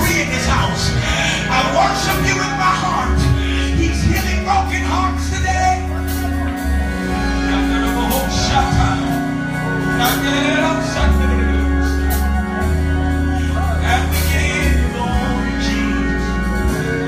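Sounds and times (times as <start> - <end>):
deep sustained bass: 0.0 - 17.0
keyboard chords: 0.0 - 17.0
people singing and calling out: 0.0 - 17.0.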